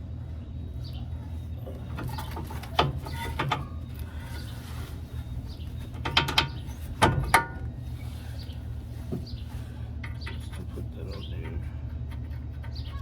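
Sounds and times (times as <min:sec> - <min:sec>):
metal tools clanking on steel: 0:01.6 - 0:04.6, 0:05.8 - 0:07.7, 0:09.6 - 0:13.0.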